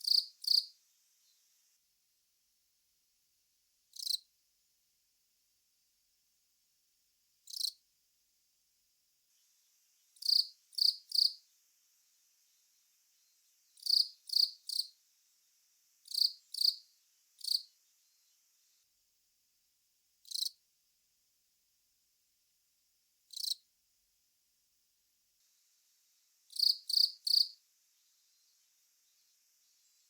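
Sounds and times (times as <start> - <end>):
cricket chirping: 0.0 - 1.7, 3.8 - 4.8, 5.7 - 8.0, 9.4 - 18.9, 20.1 - 20.7, 22.8 - 23.8, 26.3 - 30.0.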